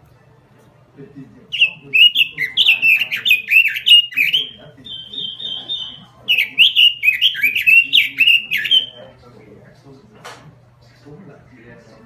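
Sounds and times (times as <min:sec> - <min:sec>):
bird trill: 0:01.5 - 0:09.1
bird singing sliding whistled notes: 0:01.6 - 0:09.0.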